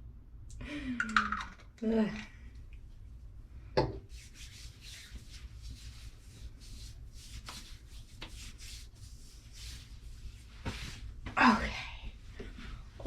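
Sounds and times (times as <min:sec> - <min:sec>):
hands rubbing skin: 0:04.1 - 0:11.2.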